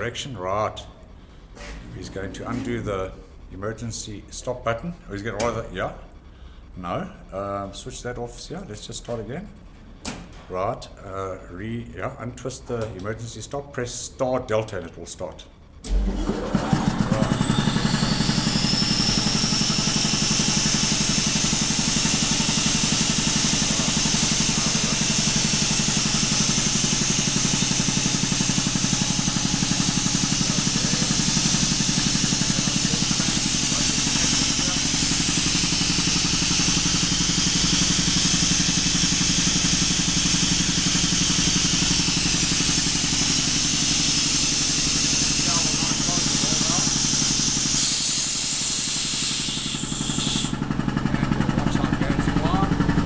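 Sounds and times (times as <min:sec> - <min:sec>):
air compressor pulsing: 0:15.5 - 0:53.0.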